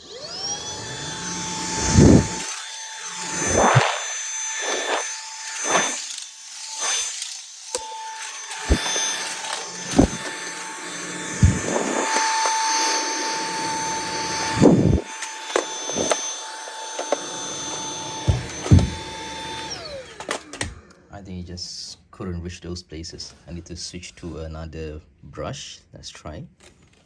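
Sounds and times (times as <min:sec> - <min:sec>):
stick vacuum whining: 0:00.0 - 0:21.1
vacuum knocking and scraping surfaces: 0:01.7 - 0:02.4, 0:03.2 - 0:05.0, 0:08.6 - 0:10.5, 0:11.3 - 0:12.6, 0:14.3 - 0:16.3, 0:17.0 - 0:19.5.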